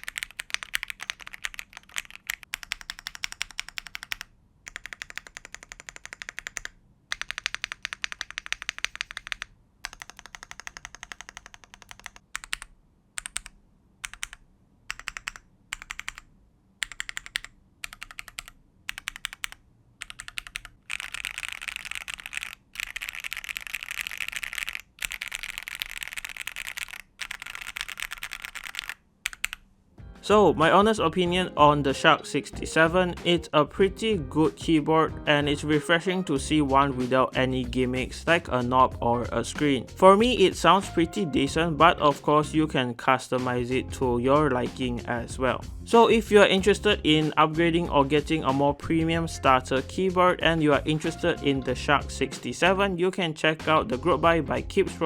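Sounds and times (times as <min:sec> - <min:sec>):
keyboard typing: 0:00.0 - 0:29.6.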